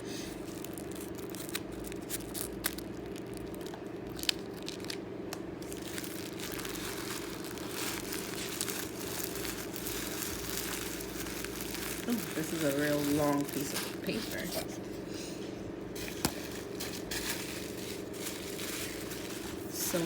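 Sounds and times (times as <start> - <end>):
paper crinkling and tearing: 0.4 - 5.0, 5.6 - 14.7, 16.0 - 20.0.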